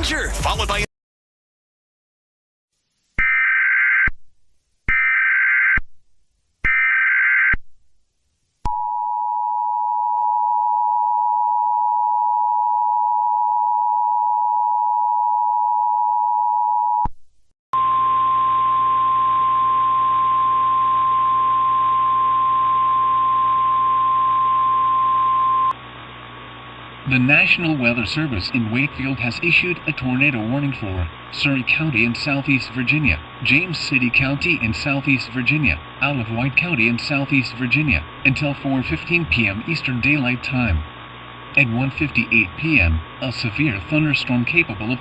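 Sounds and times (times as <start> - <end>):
hiss and hum: 25.4 - 45.0.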